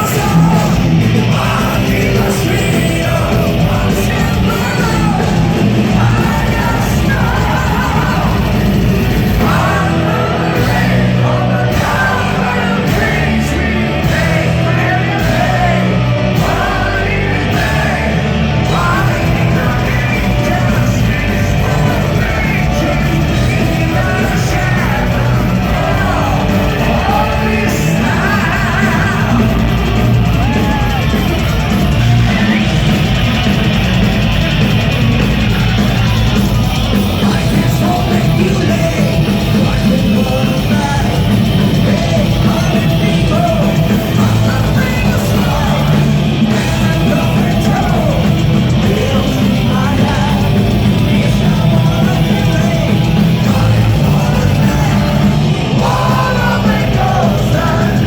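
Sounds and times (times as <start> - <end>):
lead singer singing: 0.0 - 58.0
metal band playing live: 0.0 - 58.0.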